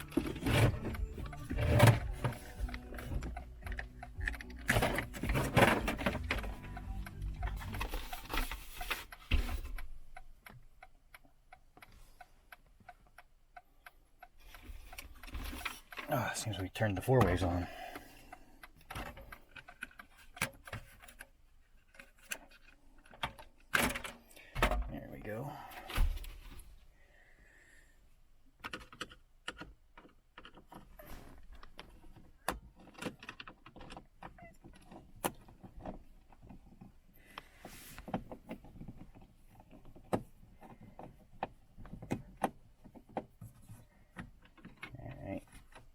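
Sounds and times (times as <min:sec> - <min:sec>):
plastic trim and tools clattering: 0:00.0 - 0:06.8.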